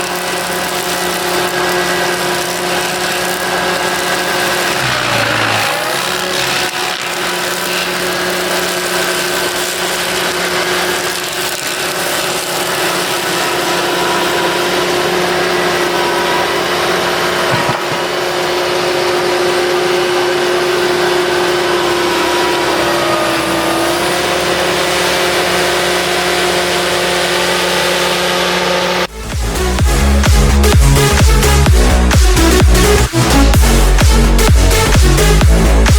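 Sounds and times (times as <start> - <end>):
steady whine: 0.0 - 10.8
engine running steadily: 0.0 - 35.9.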